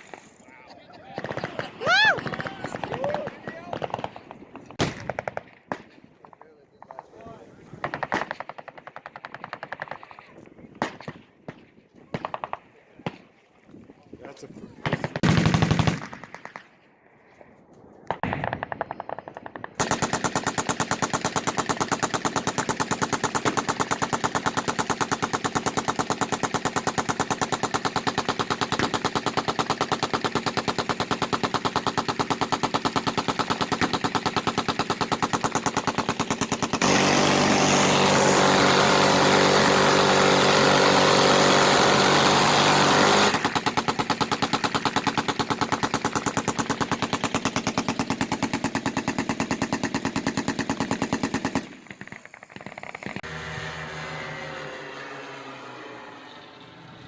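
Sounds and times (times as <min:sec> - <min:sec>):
machine guns firing: 0:01.1 - 0:07.0, 0:07.8 - 0:10.2, 0:14.8 - 0:16.8, 0:18.1 - 0:53.3.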